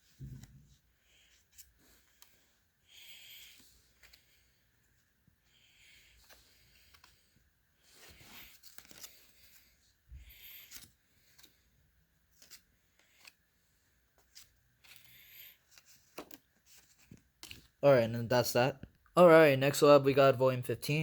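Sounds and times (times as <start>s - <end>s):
playing cards clicking and rustling: 1.2s - 2.5s, 3.1s - 4.6s, 5.8s - 17.8s.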